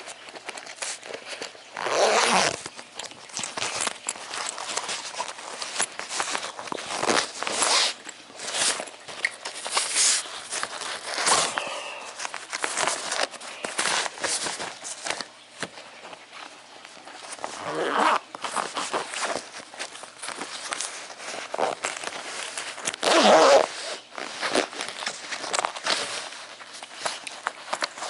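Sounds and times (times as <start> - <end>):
pencil case rustling: 0.0 - 28.0
zipper rasping: 1.7 - 2.7, 3.4 - 8.9, 9.6 - 15.2, 17.3 - 26.4.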